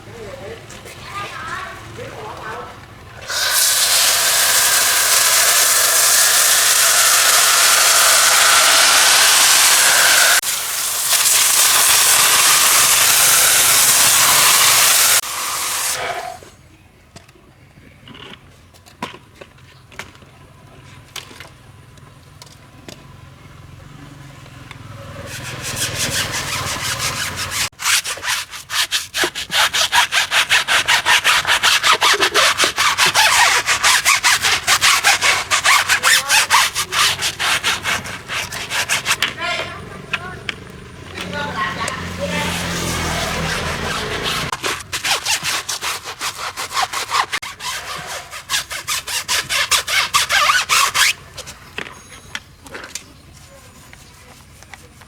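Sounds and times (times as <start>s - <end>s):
brush scrubbing: 3.2s - 16.4s, 25.3s - 39.5s, 41.2s - 51.2s, 53.4s - 55.0s
pressure washer hissing: 3.2s - 16.5s, 25.2s - 28.0s, 29.2s - 40.1s, 41.2s - 51.1s.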